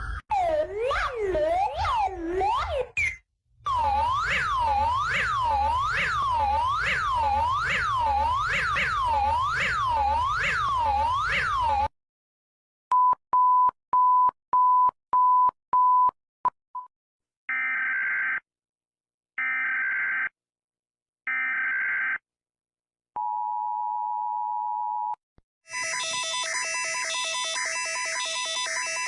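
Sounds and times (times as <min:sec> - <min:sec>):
warbling siren: 0:00.0 - 0:11.9, 0:25.7 - 0:29.0.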